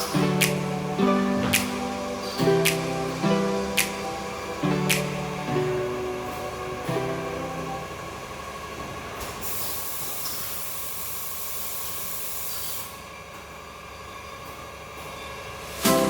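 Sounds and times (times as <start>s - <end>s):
loud hiss: 0.0s - 8.5s, 9.4s - 13.0s, 15.6s - 16.0s
machine motor humming: 0.0s - 9.2s.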